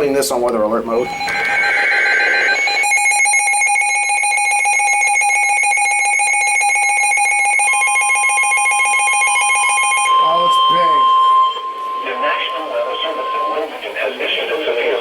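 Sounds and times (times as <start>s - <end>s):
warbling data tones: 0.9s - 15.0s
second steady tone: 1.0s - 3.0s, 9.9s - 14.8s
shrill pulsing electronic alarm tone: 1.0s - 14.7s.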